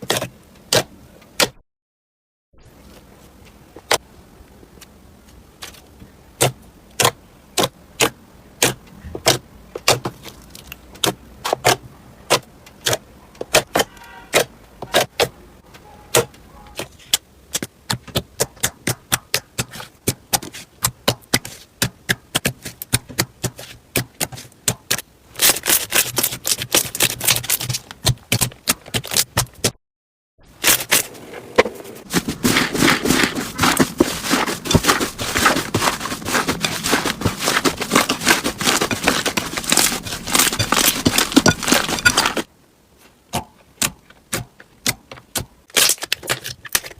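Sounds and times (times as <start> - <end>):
crunchy slime crackling: 32.0 - 42.5.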